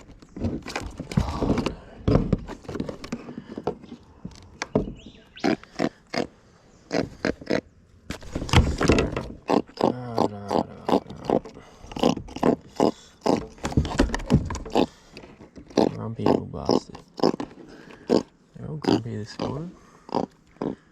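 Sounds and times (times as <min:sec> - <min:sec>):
fish grunting croaks: 0:09.4 - 0:13.6, 0:15.7 - 0:20.9.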